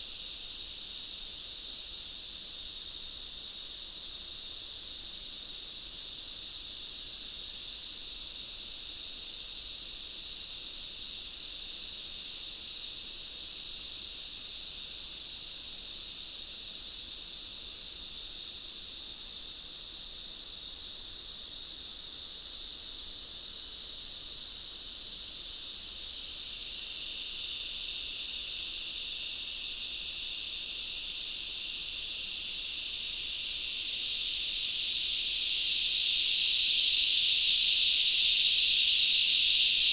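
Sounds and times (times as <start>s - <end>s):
insects buzzing shrilly: 14.1s - 39.9s.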